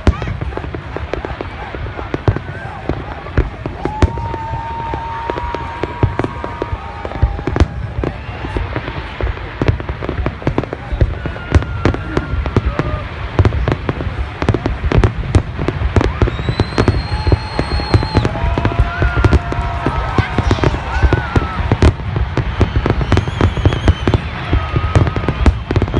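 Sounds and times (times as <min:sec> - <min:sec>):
fireworks bangs: 0:00.0 - 0:25.9.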